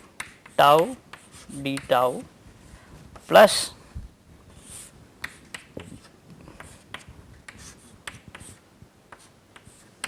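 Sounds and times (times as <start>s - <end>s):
pen scratching on paper: 0.3s - 1.9s, 4.5s - 8.6s, 9.2s - 9.9s.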